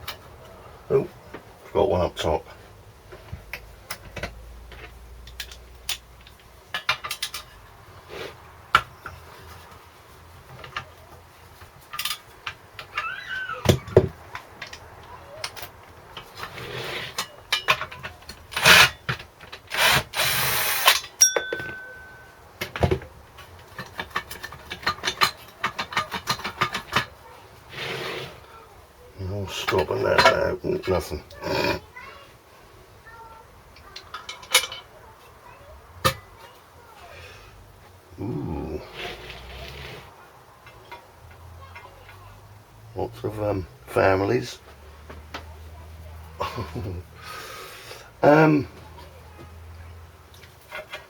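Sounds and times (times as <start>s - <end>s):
hand tools and metal parts clinking: 3.1s - 28.4s, 29.5s - 31.7s, 33.7s - 35.4s, 50.2s - 51.0s
cordless drill running: 19.7s - 21.0s.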